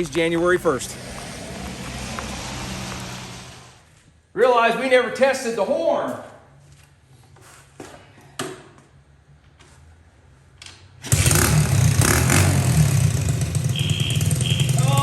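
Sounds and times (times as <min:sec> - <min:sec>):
minibike engine running: 0:11.1 - 0:15.0.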